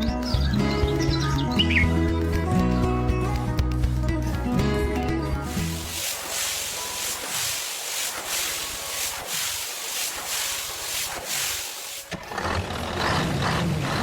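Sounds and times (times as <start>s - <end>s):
rain falling: 5.5s - 12.1s.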